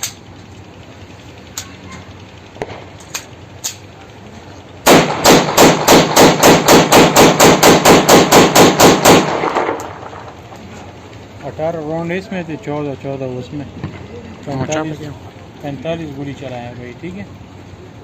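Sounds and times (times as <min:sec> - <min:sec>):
pistol handling clicks: 0:00.0 - 0:00.2, 0:02.6 - 0:03.9, 0:08.9 - 0:10.3
pistol rapid fire: 0:02.6 - 0:03.2, 0:04.8 - 0:10.3.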